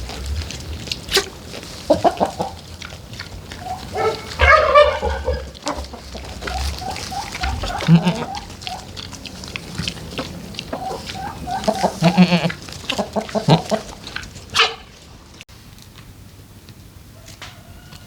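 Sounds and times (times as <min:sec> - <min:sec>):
chickens clucking: 0:00.0 - 0:15.4
goats bleating: 0:00.9 - 0:15.1.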